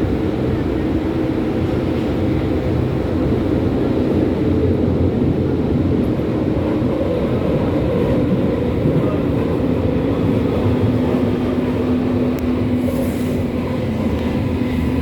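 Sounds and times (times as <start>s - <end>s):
train wheels rumbling: 0.0s - 15.0s.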